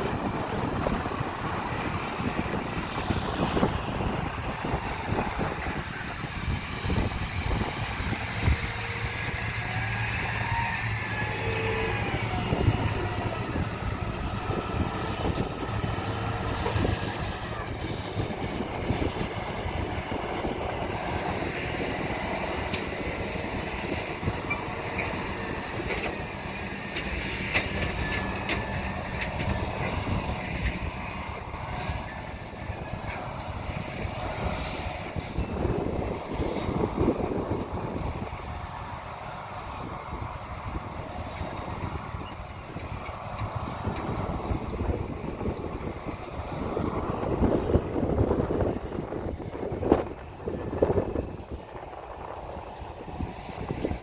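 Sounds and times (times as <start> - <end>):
diesel engines running: 0.0 - 54.0
low engine hum: 0.0 - 54.0.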